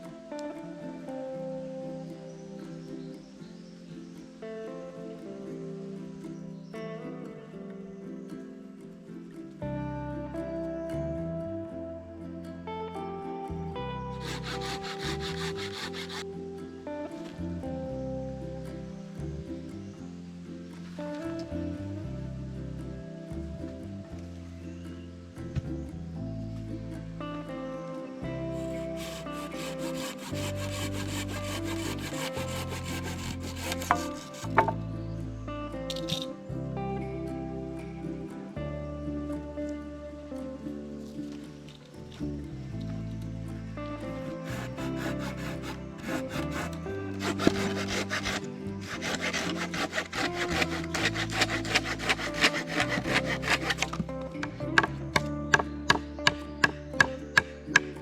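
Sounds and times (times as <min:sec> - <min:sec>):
background music: 0:00.0 - 0:58.0
hand saw cutting wood: 0:14.1 - 0:16.3, 0:28.6 - 0:34.8, 0:44.2 - 0:55.3.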